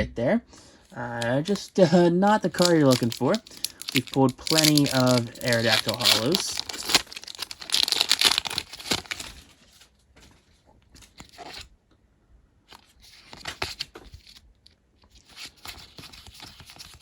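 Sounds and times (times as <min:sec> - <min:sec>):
foil wrapper crinkling and tearing: 0:01.0 - 0:09.9, 0:15.1 - 0:17.0
cards being handled: 0:01.0 - 0:10.4, 0:15.1 - 0:17.0.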